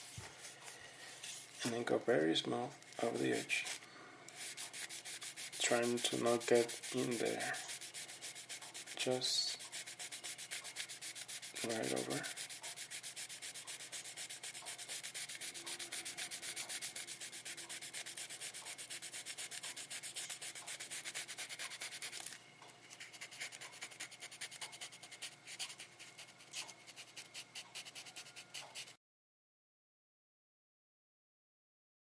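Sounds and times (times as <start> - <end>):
wet sandpaper rubbing on model car: 3.0 - 3.8, 4.4 - 29.0.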